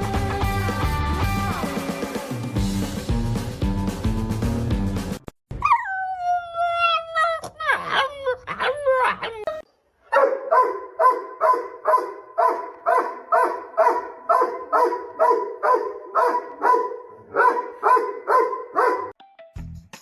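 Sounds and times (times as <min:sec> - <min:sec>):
dog barking: 0:10.1 - 0:19.1.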